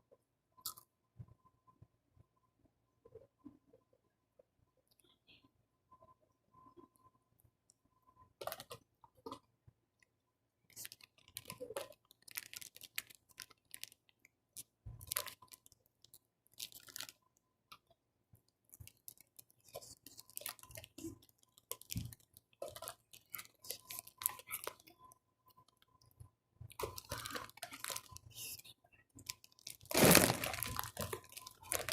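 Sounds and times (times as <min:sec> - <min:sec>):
person chewing crunchy food: 0:18.7 - 0:24.9, 0:26.7 - 0:28.4, 0:29.2 - 0:31.9.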